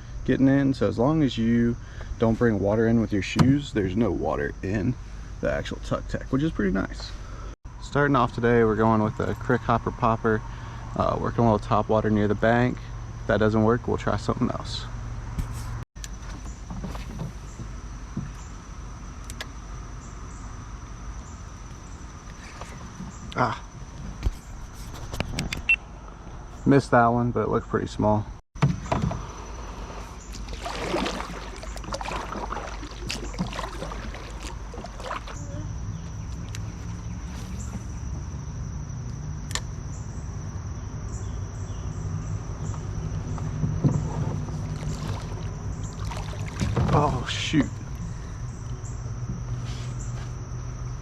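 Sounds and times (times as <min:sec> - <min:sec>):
insect chirring: 0:16.0 - 0:24.8, 0:28.8 - 0:51.0.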